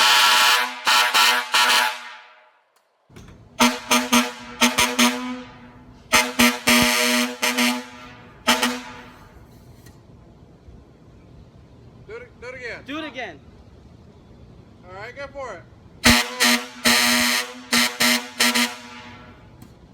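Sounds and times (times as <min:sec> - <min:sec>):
air horn short honks: 0:03.6 - 0:09.4, 0:16.0 - 0:19.5.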